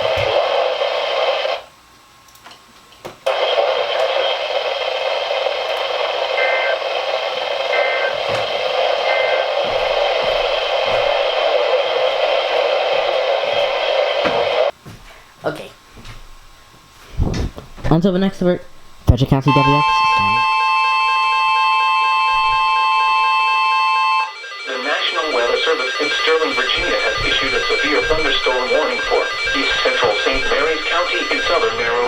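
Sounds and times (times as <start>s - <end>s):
radio static hiss: 0.0s - 1.7s, 3.3s - 14.7s, 18.0s - 23.8s, 24.6s - 32.0s
short faint beeps: 19.5s - 23.3s.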